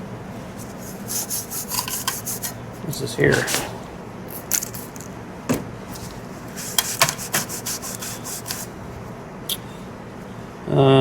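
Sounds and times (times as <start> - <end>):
hands scraping a car heater: 0.5 - 2.6, 5.9 - 8.8.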